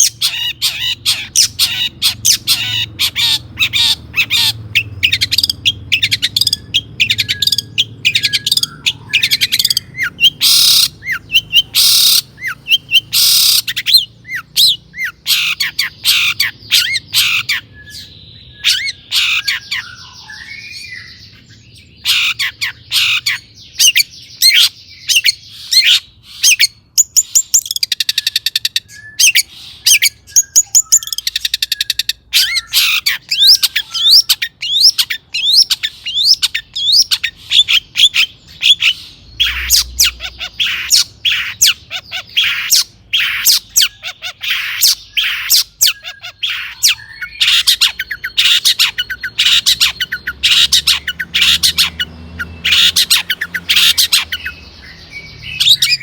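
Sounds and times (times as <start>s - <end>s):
songbird singing harsh trills: 0.0s - 56.0s.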